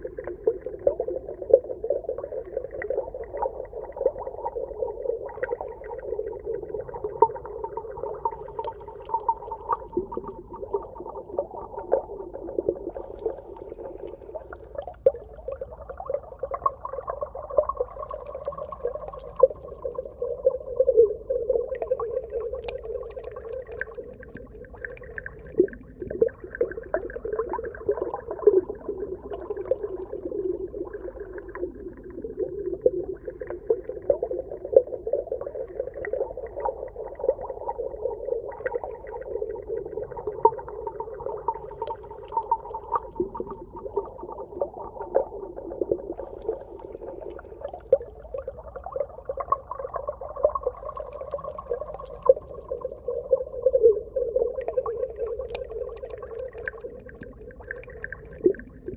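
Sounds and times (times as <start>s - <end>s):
muffled underwater wash: 0.0s - 58.9s
small underwater clicks and pops: 6.8s - 11.0s, 16.6s - 20.2s, 21.7s - 30.3s, 38.1s - 48.6s, 49.4s - 58.9s.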